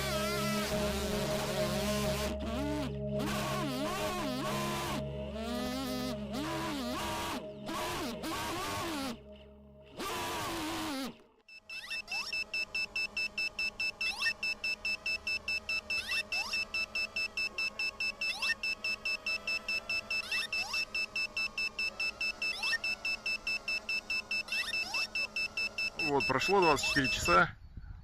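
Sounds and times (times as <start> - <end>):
high electronic beeping: 11.5 - 27.4.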